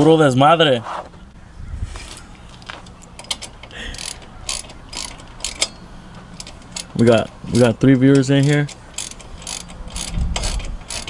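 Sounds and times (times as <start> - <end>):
metallic clicks: 2.8 - 5.8
ratchet wrench clicking: 3.1 - 5.8, 8.1 - 11.0.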